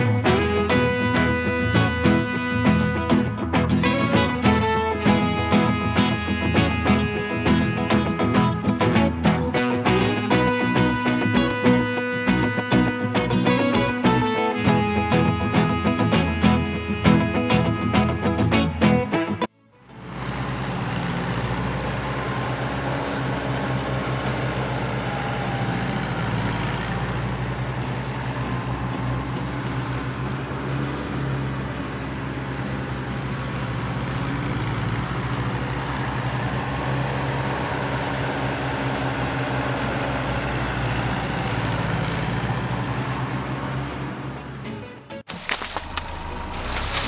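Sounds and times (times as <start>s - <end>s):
large engine running: 19.9s - 44.5s.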